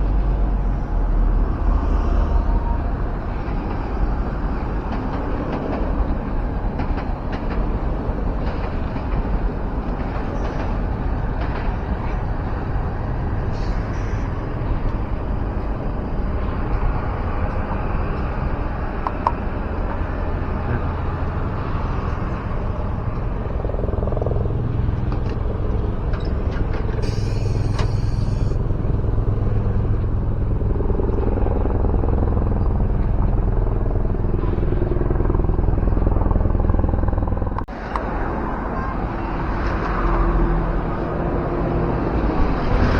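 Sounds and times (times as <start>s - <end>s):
bus engine pulling away: 8.7s - 42.9s
air brake hiss: 13.5s - 14.2s, 27.0s - 28.6s.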